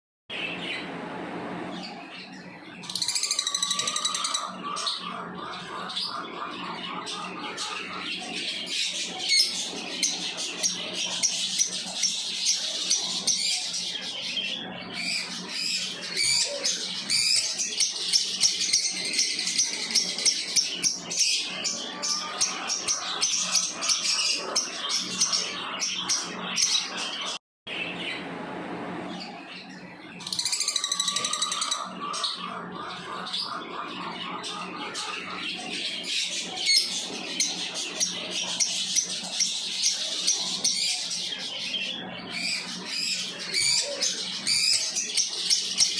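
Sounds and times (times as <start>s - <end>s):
lovebirds chirping: 29.2s - 45.9s.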